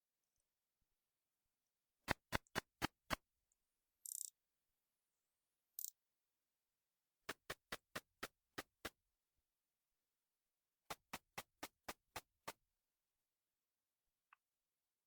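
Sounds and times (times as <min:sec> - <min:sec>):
katydid clicks through bat detector: 0:04.1 - 0:04.3.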